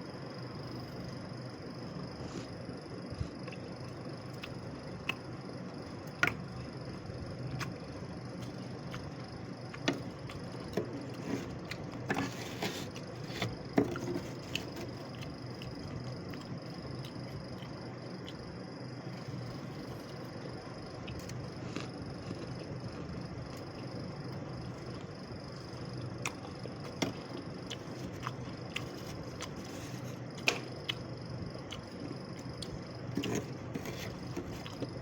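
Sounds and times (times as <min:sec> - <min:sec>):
steady low hum: 0:00.0 - 0:35.0
frost scraping rush: 0:11.2 - 0:13.5.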